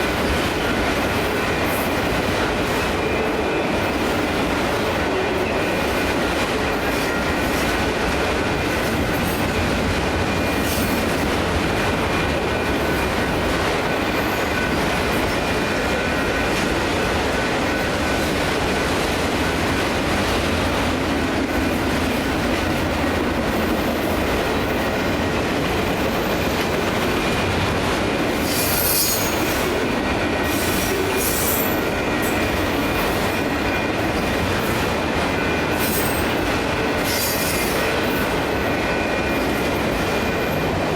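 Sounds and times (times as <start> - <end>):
train rumble and wheel clatter: 0.0 - 40.9
high-pitched wheel squeal: 28.4 - 29.4.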